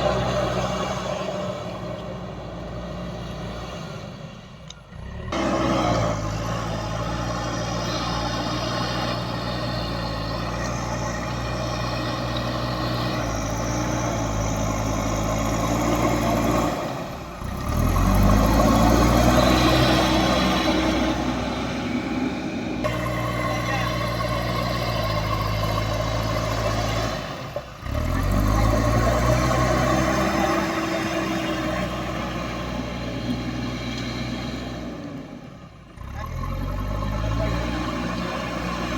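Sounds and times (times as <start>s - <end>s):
heavy diesel engine running: 0.0s - 38.9s.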